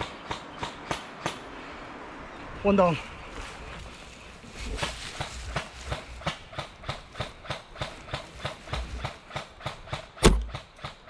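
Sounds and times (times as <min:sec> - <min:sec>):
footsteps thudding and rustling: 0:03.3 - 0:09.2.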